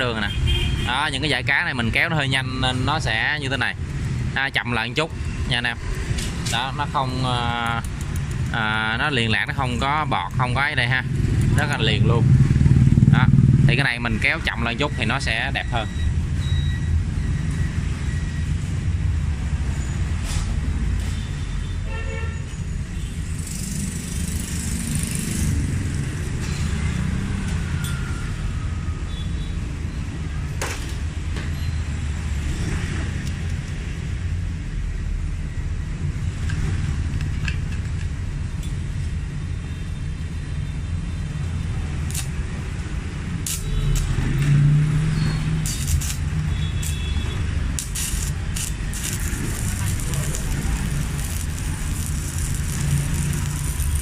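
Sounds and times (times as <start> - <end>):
low rumble of road traffic: 0.0 - 54.0
welding arc crackle and hiss: 42.0 - 42.5, 43.4 - 44.3, 45.5 - 54.0.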